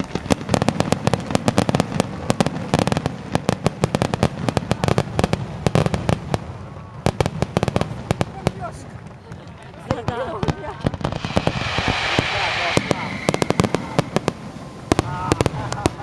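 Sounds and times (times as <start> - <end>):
fireworks bangs and crackles: 0.0 - 16.0
low rumbling boom: 11.0 - 15.1.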